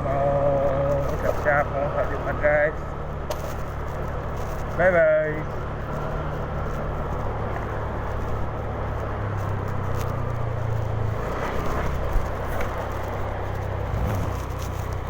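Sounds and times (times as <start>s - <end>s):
wind and road noise: 0.0s - 15.0s
scooter engine running: 5.6s - 15.0s.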